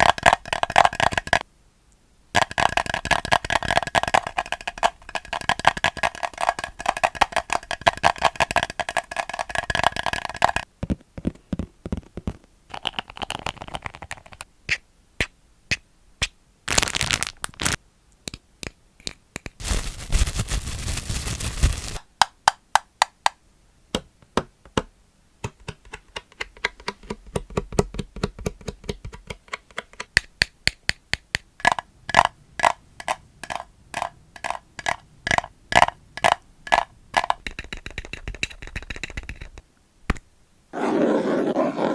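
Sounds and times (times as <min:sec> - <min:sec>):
scratching or rubbing: 0:19.6 - 0:22.0.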